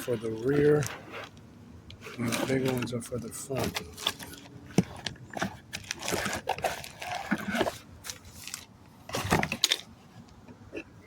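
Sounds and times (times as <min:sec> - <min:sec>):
boxes rustling and knocking: 0:00.0 - 0:11.0
boxes clattering: 0:02.0 - 0:09.9.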